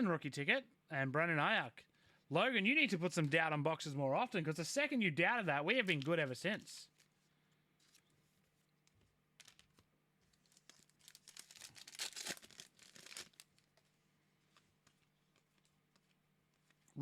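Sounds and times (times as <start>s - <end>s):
faint electrical hum: 0.0s - 17.0s
foil wrapper tearing and crinkling: 9.4s - 13.7s.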